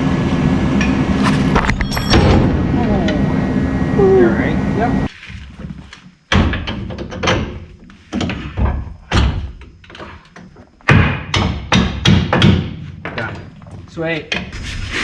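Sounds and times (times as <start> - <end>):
heavy metal knocks and thuds: 5.6 - 14.5.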